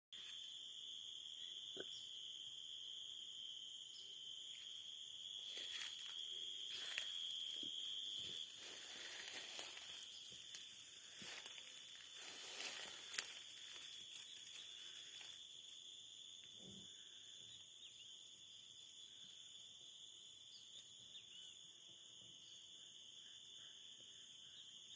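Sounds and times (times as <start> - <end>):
insects calling: 0.2 - 24.9
dry crackling and rustling: 5.4 - 15.4.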